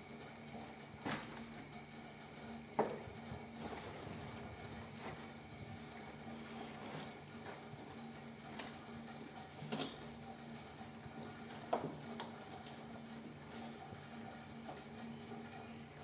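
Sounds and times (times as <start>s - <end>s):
kittens tapping and scuffing: 2.8s - 14.0s.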